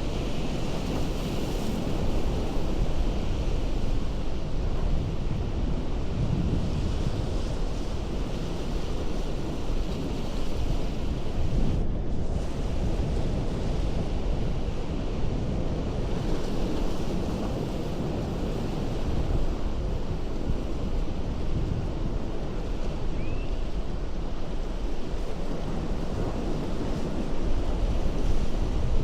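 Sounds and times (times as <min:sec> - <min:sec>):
ocean waves breaking on rocks: 0:12.4 - 0:29.0.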